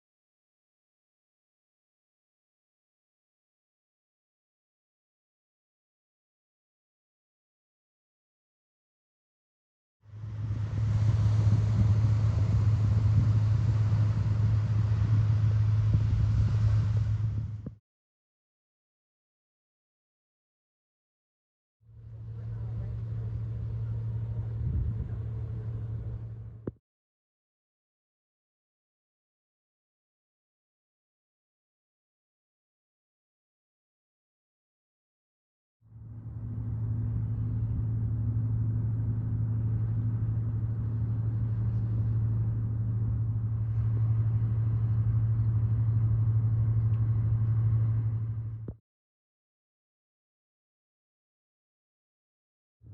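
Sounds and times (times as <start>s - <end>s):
low engine hum: 10.0s - 17.8s, 21.9s - 26.8s, 35.9s - 48.8s.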